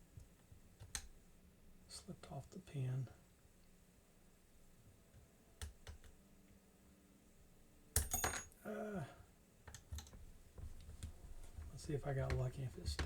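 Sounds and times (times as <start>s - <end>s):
metallic clinks with ringing: 8.0s - 8.6s
falling hum of voice: 8.6s - 9.3s.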